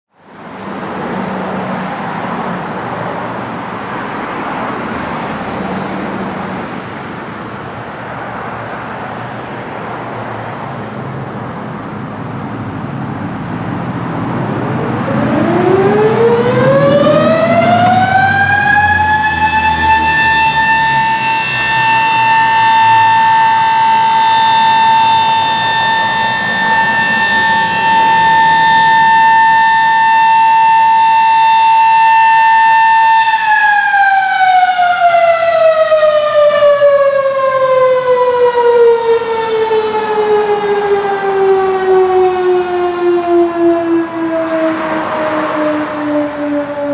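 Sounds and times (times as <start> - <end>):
street noise: 0.1 - 46.9
warning siren winding up: 14.8 - 46.9.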